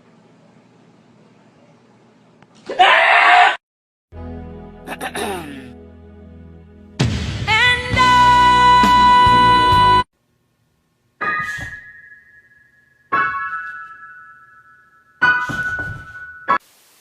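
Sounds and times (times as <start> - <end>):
piano notes ringing: 11.2 - 16.6.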